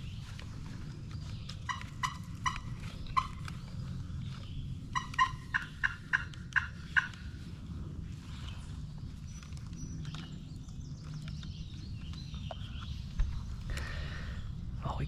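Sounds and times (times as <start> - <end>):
wild turkey yelping: 1.7 - 3.6, 4.9 - 7.3.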